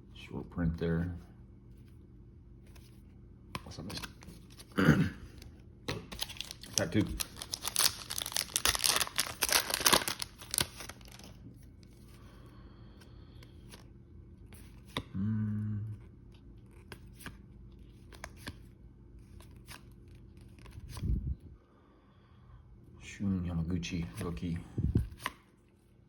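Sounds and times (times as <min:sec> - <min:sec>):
cards clicking and rustling: 0:03.5 - 0:04.7, 0:05.4 - 0:11.4, 0:16.6 - 0:18.6
foil wrapper tearing: 0:06.2 - 0:11.4.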